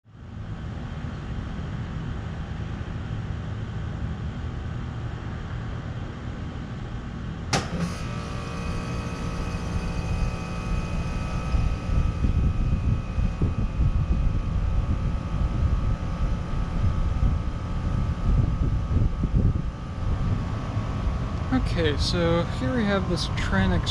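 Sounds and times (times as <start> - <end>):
air conditioner hum: 0.1 - 23.9
compressor and fan running: 0.1 - 23.9
steady whine: 0.1 - 23.9
sharp click: 7.5 - 8.0.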